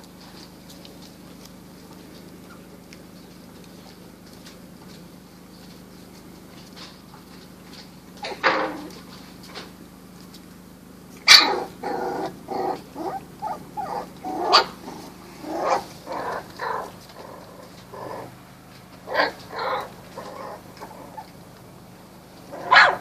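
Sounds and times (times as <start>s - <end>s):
puppies barking and yipping: 0.1s - 5.0s, 11.2s - 23.0s.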